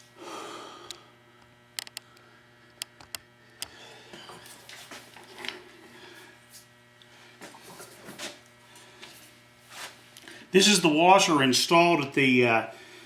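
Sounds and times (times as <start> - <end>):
clicks and ticks of objects: 1.8 - 2.2.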